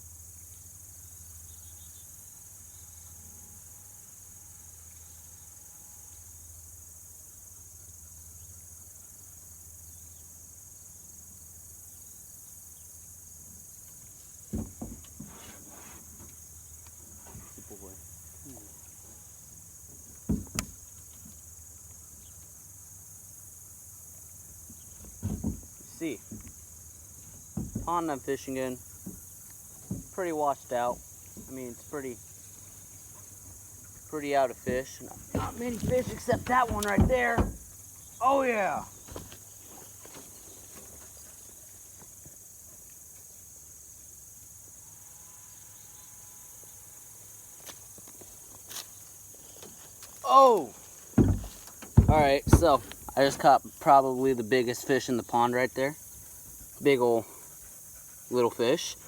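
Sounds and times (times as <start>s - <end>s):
high-pitched insect trill: 0.0s - 59.0s
short thump: 14.5s - 15.6s, 20.2s - 20.8s, 24.7s - 26.6s, 27.4s - 28.2s, 29.0s - 30.3s, 34.6s - 37.8s, 50.5s - 53.5s.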